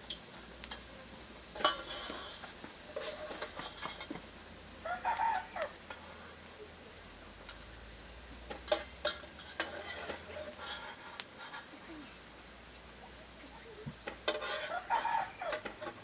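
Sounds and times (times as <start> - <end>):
chicken calling: 4.8 - 5.8, 14.4 - 15.7.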